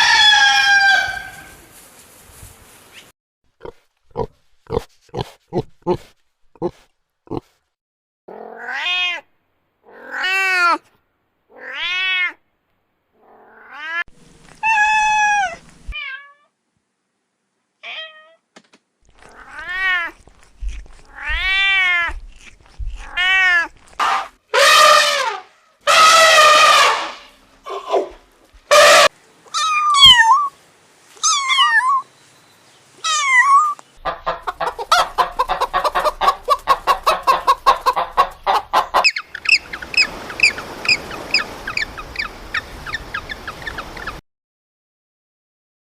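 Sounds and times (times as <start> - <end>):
cat meowing: 8.3 - 9.3, 9.9 - 10.8, 11.5 - 12.4, 13.2 - 16.5, 17.8 - 18.4, 19.2 - 24.3, 29.5 - 30.5, 31.2 - 32.1, 33.0 - 33.8.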